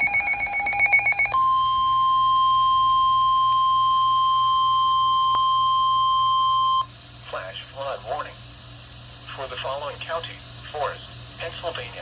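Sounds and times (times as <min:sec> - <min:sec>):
loud high alarm tone: 0:00.0 - 0:06.9.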